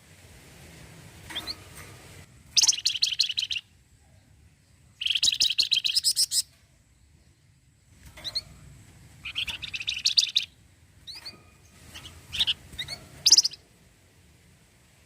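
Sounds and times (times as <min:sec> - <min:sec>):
bird singing chattering trill: 0:02.6 - 0:03.7, 0:04.9 - 0:07.5, 0:09.2 - 0:13.6.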